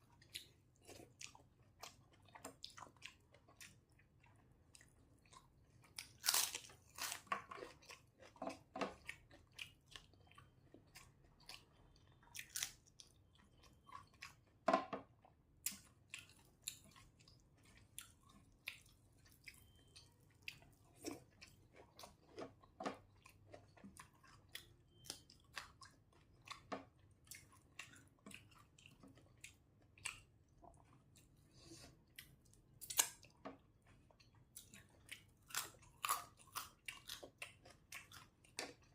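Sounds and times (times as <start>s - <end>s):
person chewing: 0.0s - 14.6s, 15.2s - 38.9s
crunchy bites: 6.1s - 7.3s.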